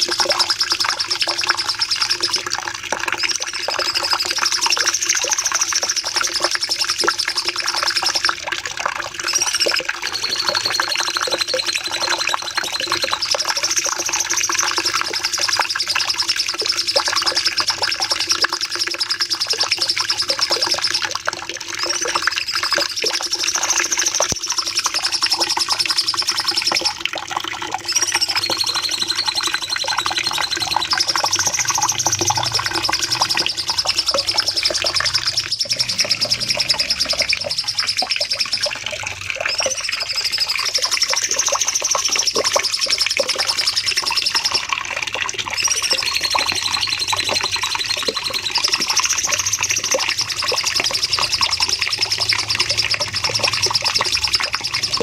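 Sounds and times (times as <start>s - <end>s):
high whistled bird phrase: 9.2s - 16.4s, 27.9s - 38.8s
songbird rapid chattering song: 9.2s - 20.9s, 27.9s - 38.6s.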